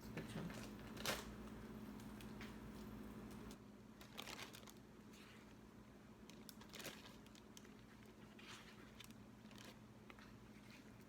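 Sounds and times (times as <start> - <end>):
rustling and scraping of raw meat: 6.6 - 11.0.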